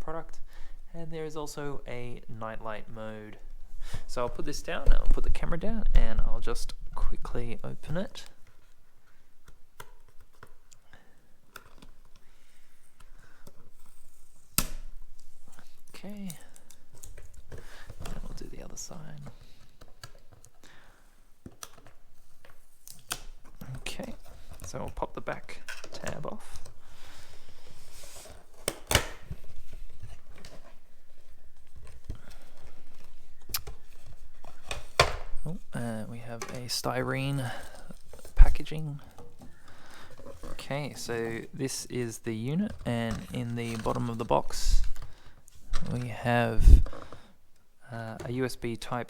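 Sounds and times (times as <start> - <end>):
rustle of handling packaging: 21.4 - 47.4
cardboard snaps and knocks: 28.6 - 29.4.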